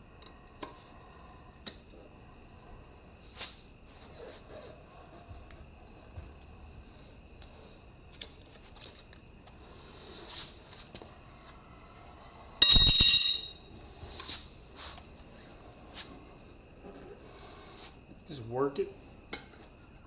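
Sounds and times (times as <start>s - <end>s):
metallic clank with ring: 12.6s - 13.7s.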